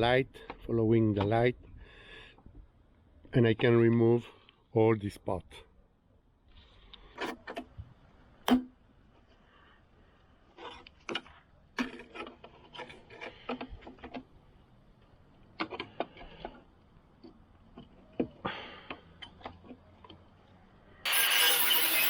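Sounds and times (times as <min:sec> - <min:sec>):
metal clicks taps and scrapes: 0:10.6 - 0:14.4, 0:15.0 - 0:20.3.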